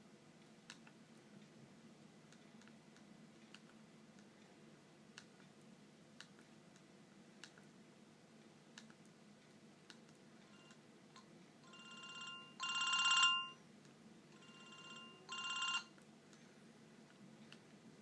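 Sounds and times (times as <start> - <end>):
faint clicks: 6.2 - 7.7
trilling phone ringtone: 10.5 - 10.8, 11.6 - 13.6, 14.4 - 15.9.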